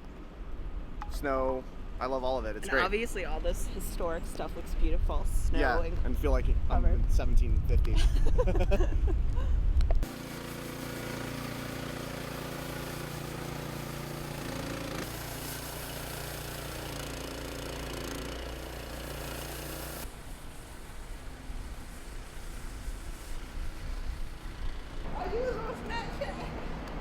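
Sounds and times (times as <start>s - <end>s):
outdoor street noise: 0.0s - 7.0s, 8.5s - 27.0s
engine running with hum and hiss: 10.0s - 27.0s.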